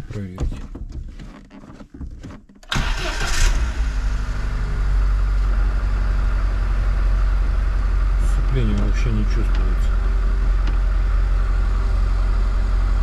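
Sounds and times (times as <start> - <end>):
starter motor cranking: 2.6 - 4.6
car engine idling: 2.7 - 13.0.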